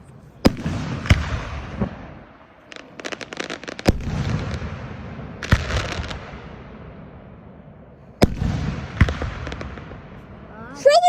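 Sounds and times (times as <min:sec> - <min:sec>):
fireworks crackling pops: 0:00.4 - 0:04.8, 0:08.2 - 0:11.0
fireworks booming: 0:00.4 - 0:11.0.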